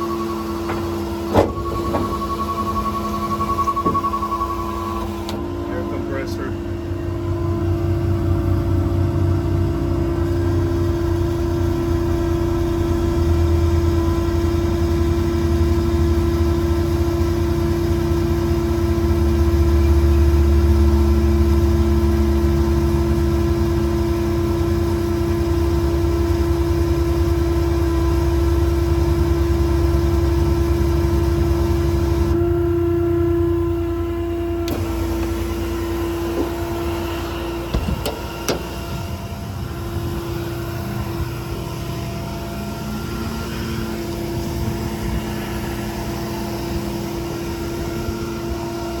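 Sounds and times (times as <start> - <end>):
steady whine: 0.0 - 10.4, 31.4 - 49.0
diesel engine running: 0.0 - 49.0.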